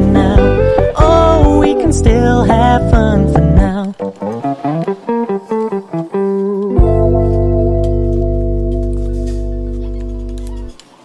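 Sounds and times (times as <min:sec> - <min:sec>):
pop song held chord: 0:00.0 - 0:04.0.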